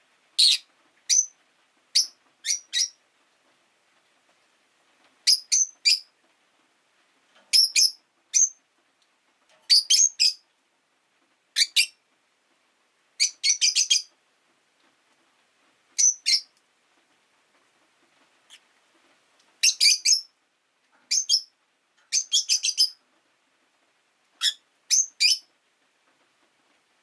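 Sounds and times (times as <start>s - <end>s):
lovebirds chirping: 0.4s - 3.0s, 5.2s - 6.1s, 7.5s - 8.6s, 9.7s - 10.4s, 11.6s - 12.0s, 13.2s - 14.1s, 16.0s - 16.5s, 19.6s - 20.3s, 21.1s - 21.5s, 22.1s - 23.0s, 24.4s - 25.5s.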